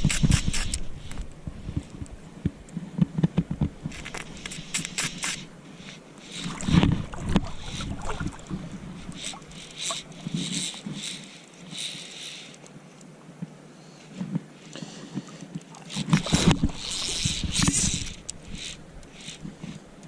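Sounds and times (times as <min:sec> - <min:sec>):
water splashing and sloshing: 0:00.8 - 0:11.8, 0:14.2 - 0:20.0
sharp clicks: 0:03.9 - 0:05.5.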